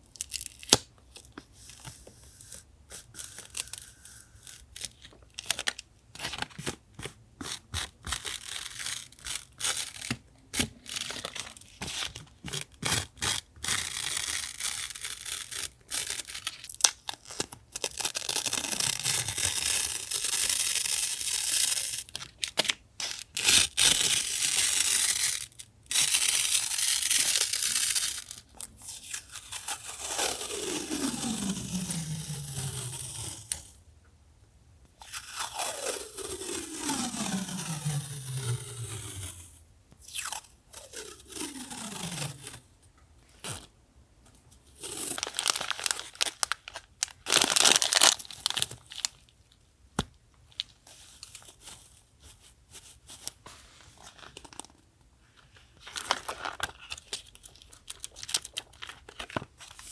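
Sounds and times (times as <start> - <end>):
paper tearing: 2.4 - 22.2, 23.1 - 28.4, 29.1 - 33.7, 35.1 - 42.6, 44.7 - 49.1.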